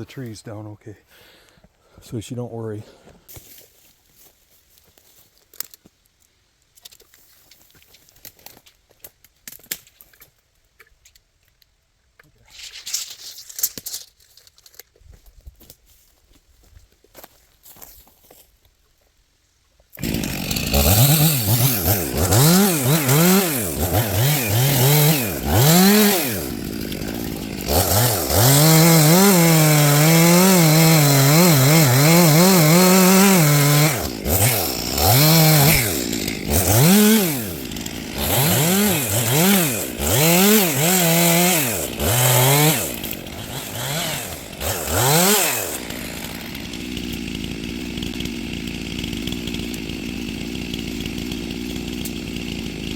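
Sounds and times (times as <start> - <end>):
chainsaw revving: 20.0 - 52.9.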